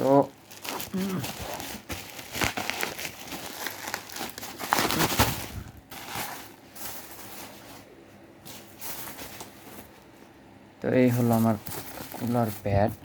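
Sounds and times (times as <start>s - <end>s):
plastic packaging crinkling: 0.0s - 7.8s, 11.1s - 13.0s.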